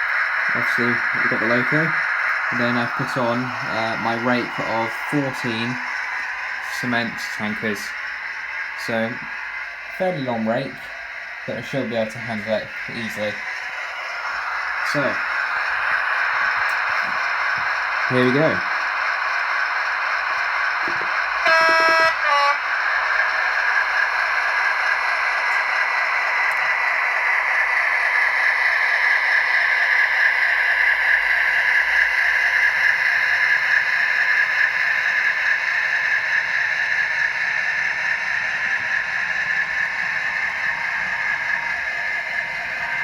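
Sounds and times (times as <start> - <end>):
diesel engine running under load: 0.0 - 43.0
two-tone train horn: 21.4 - 22.8.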